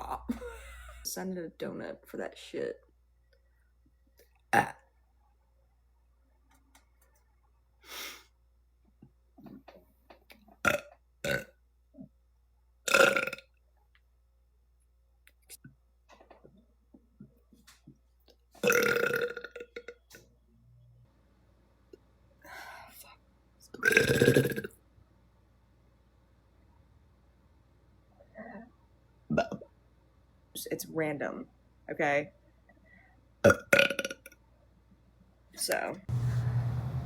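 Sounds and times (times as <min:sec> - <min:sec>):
woman burping: 0:00.0 - 0:01.1, 0:04.5 - 0:04.8, 0:18.6 - 0:19.9, 0:23.8 - 0:24.7, 0:33.4 - 0:34.2.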